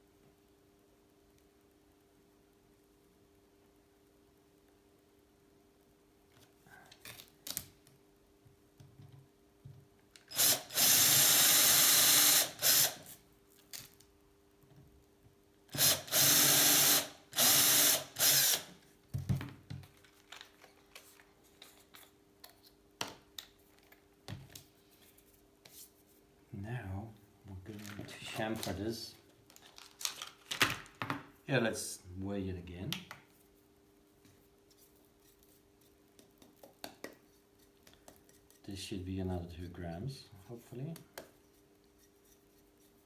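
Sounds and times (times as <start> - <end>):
power drill boring: 10.3 - 13.1, 15.7 - 18.7.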